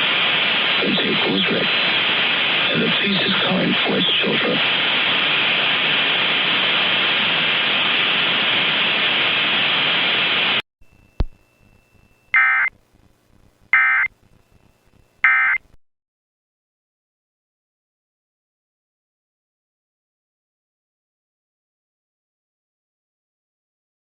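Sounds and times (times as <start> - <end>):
loud static hiss: 0.0 - 15.7
buzzy data bursts: 12.3 - 12.7, 13.7 - 15.6.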